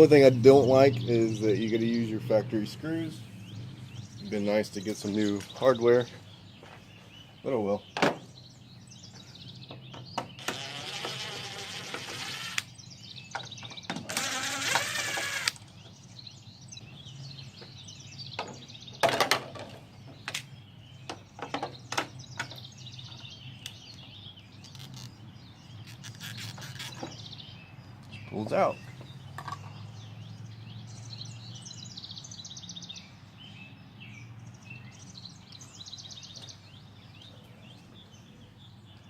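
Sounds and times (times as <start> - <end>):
cordless drill whirring: 10.4 - 12.7, 14.1 - 15.6.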